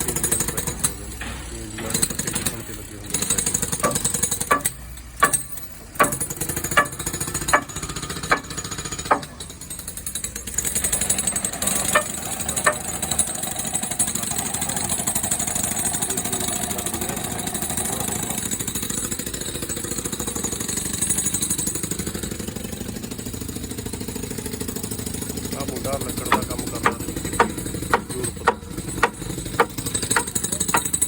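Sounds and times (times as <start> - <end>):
construction machinery rattling: 0.0 - 31.0
sharp knocks: 3.2 - 9.6, 11.4 - 13.2, 26.2 - 31.0.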